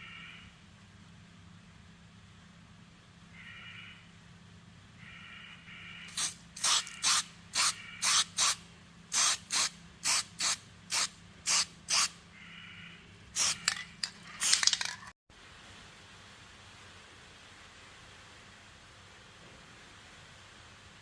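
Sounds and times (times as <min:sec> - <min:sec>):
spray paint hissing bursts: 0:06.1 - 0:12.2, 0:13.4 - 0:13.8, 0:14.4 - 0:14.9.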